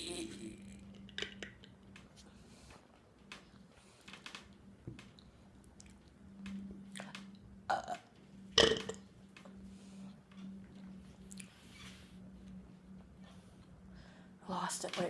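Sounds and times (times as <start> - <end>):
person burping: 7.7 - 8.0.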